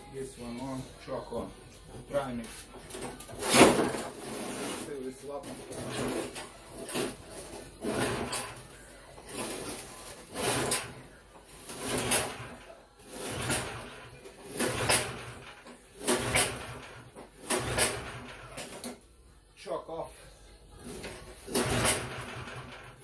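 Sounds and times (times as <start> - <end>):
recoil starter pulls: 10.2 - 11.0, 11.6 - 19.0, 20.8 - 23.0
engine turning over: 11.6 - 18.9, 20.8 - 23.0.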